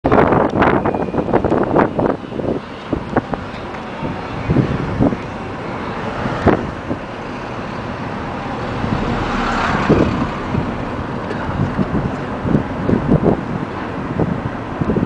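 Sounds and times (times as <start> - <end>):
wind buffeting microphone: 0.0 - 15.0
wind thumps on microphone: 6.1 - 15.0.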